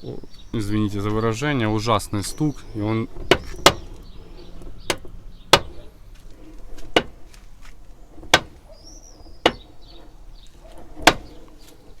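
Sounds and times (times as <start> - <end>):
car door check knocking: 3.1 - 5.9, 6.8 - 7.2, 8.2 - 8.7, 9.4 - 9.7, 11.0 - 11.4.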